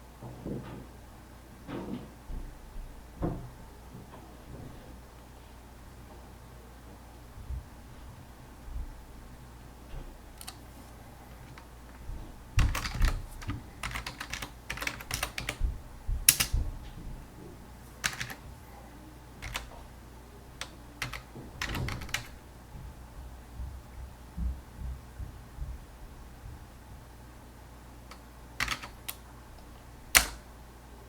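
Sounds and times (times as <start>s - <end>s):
keyboard typing: 10.4s - 15.6s, 16.3s - 16.6s, 18.0s - 18.4s, 19.4s - 19.8s, 20.6s - 22.4s, 28.1s - 29.2s, 30.1s - 30.5s.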